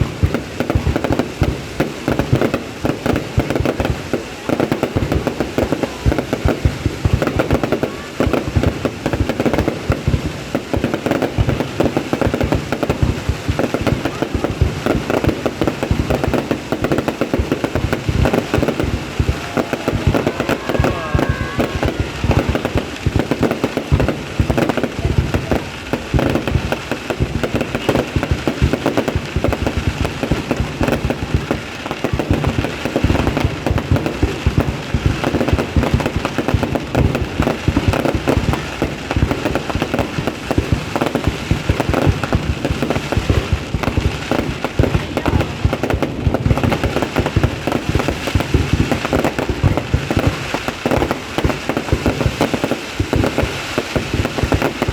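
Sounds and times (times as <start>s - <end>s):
fireworks bangs and crackling pops: 0.0s - 54.9s.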